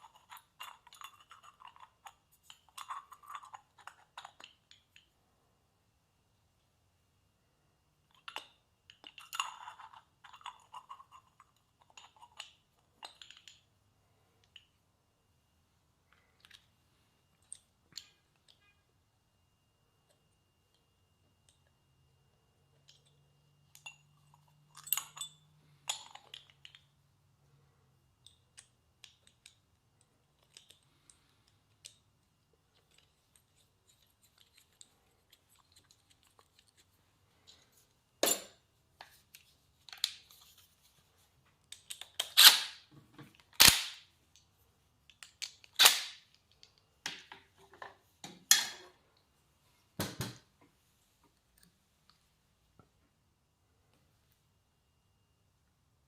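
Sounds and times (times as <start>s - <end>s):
tools clicking and knocking: 8.1s - 13.7s.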